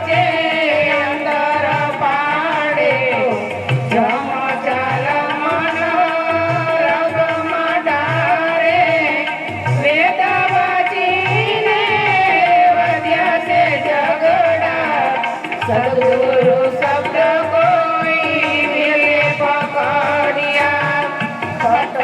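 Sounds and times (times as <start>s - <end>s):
ornamented devotional melody: 0.0s - 22.0s
tabla beat: 0.0s - 22.0s.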